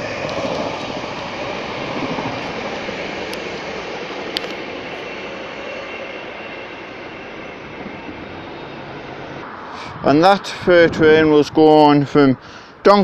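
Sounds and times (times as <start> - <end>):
freight train rumbling past: 0.0 - 13.0.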